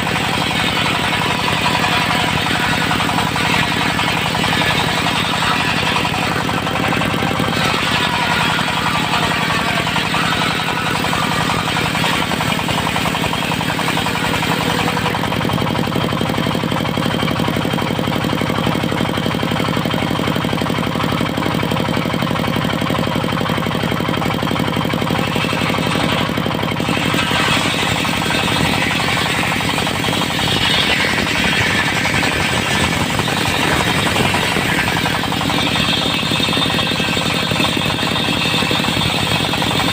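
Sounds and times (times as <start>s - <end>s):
diesel engine knocking: 0.0s - 39.9s
harsh high-pitched noise: 25.2s - 39.9s.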